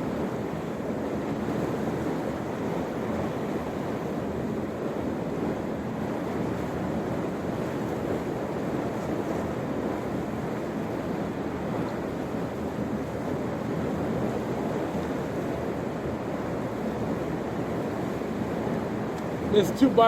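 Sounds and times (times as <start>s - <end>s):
steady rushing noise: 19.2s - 20.0s.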